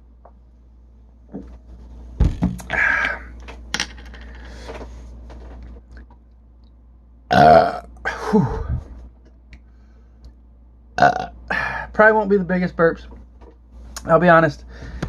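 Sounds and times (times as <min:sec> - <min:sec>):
man burping loudly: 0:07.3 - 0:08.7, 0:11.0 - 0:11.7.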